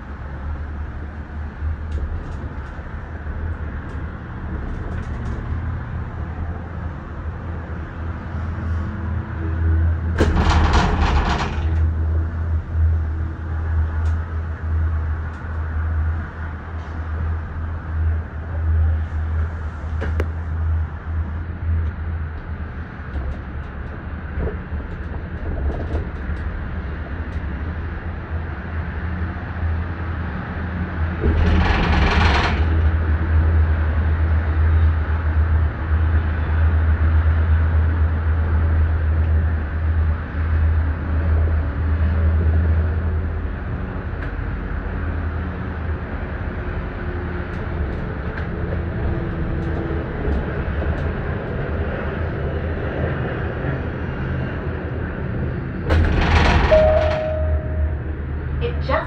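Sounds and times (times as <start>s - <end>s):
gondola cabin low rumble: 0.0s - 59.0s
rattling clatter: 10.2s - 12.2s, 31.2s - 33.1s, 55.9s - 58.0s
mechanical rattle: 55.9s - 57.5s.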